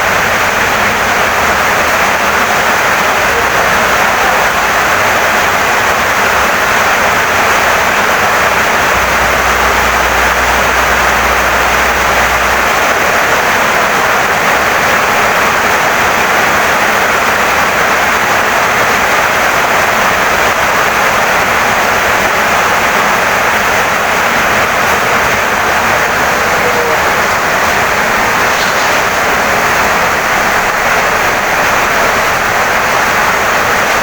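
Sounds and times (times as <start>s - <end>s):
heavy rain pouring: 0.0s - 34.0s
low hum: 6.5s - 15.4s.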